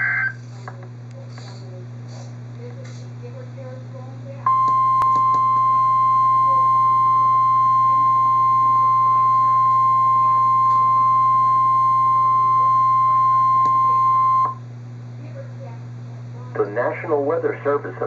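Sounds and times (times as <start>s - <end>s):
steady warning alarm beep: 4.4s - 14.6s.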